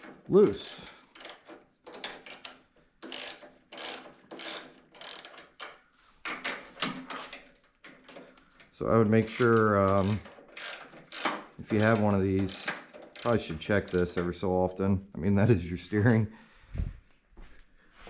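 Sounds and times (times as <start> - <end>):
ratchet wrench clicking: 0.4 - 5.8, 9.2 - 14.2.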